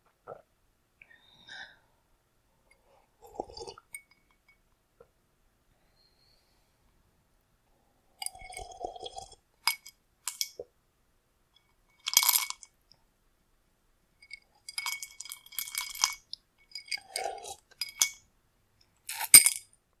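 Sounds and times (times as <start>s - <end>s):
drinking glass clinking: 14.2s - 18.2s.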